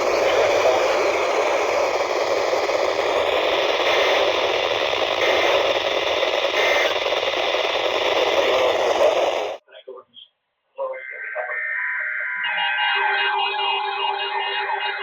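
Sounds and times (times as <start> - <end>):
radio static hiss: 0.0 - 9.6.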